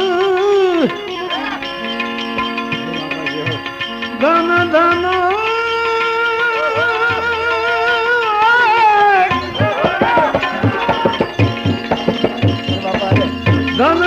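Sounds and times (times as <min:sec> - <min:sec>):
man singing long wavering note: 0:00.0 - 0:09.4
instrumental accompaniment: 0:00.0 - 0:14.0
tabla strokes: 0:00.0 - 0:14.0.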